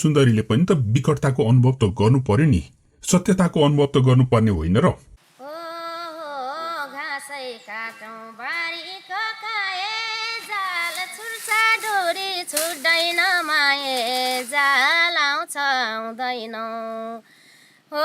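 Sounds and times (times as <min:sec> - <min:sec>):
high voice singing: 0:05.4 - 0:17.2.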